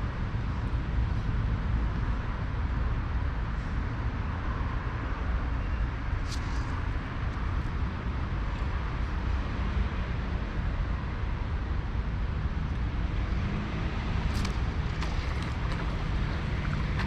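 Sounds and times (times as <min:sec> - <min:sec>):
wind rumble on microphone: 0:00.0 - 0:17.0
creek running over rocks: 0:14.3 - 0:17.0.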